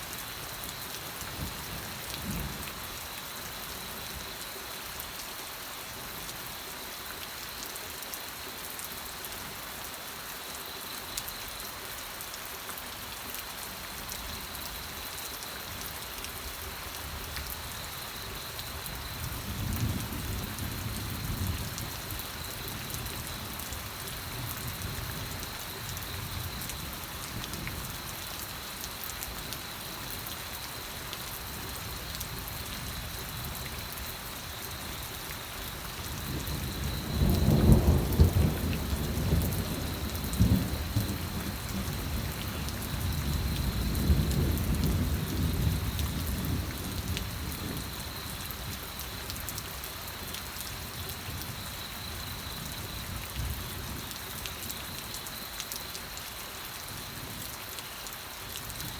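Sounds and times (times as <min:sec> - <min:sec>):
steady rain falling: 0:00.0 - 0:58.9
low rumble of thunder: 0:00.5 - 0:03.0, 0:18.8 - 0:28.1, 0:35.7 - 0:49.2.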